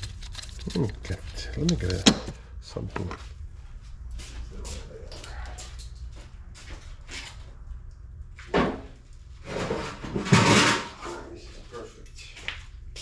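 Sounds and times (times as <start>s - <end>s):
loud clunk: 9.6s - 11.0s.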